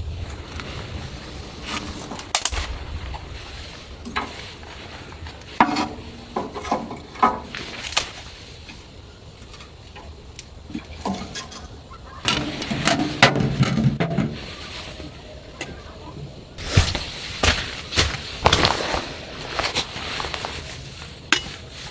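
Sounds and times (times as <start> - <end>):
low rumble: 0.0 - 5.6
objects knocking and clattering: 16.6 - 20.5.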